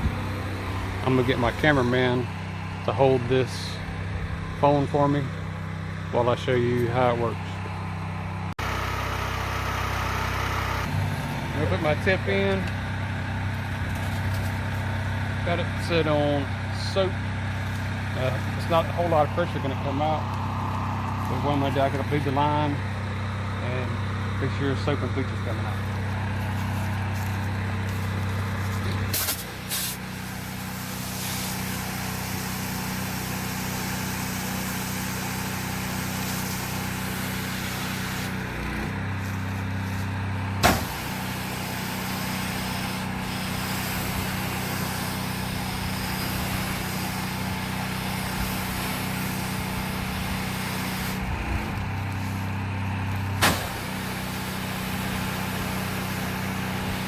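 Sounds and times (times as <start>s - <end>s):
pressure washer engine running: 0.0s - 57.0s
spray hissing: 29.1s - 38.3s, 40.6s - 51.3s.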